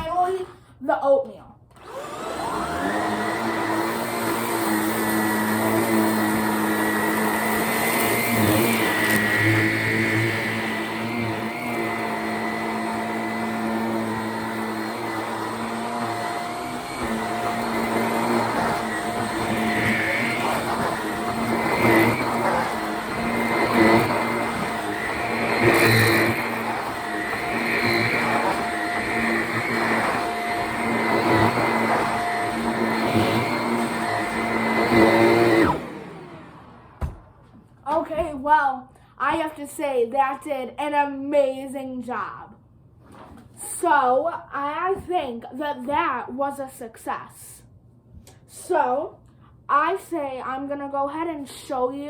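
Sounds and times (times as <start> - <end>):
stick vacuum motor whine: 1.7 - 37.4.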